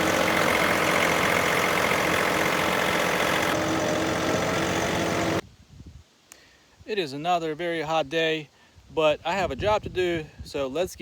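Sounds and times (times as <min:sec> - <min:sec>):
sawmill engine running: 0:00.0 - 0:05.4.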